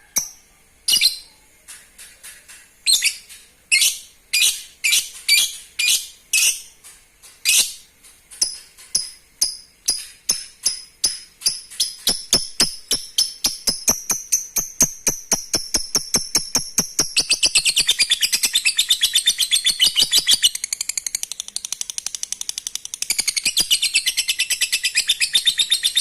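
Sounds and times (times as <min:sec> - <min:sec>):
bird chirping shrilly: 0:07.4 - 0:20.9.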